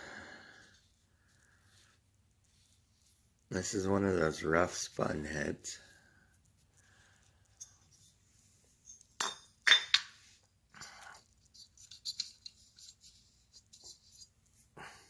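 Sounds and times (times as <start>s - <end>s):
metal engine parts clinking: 11.8s - 12.9s.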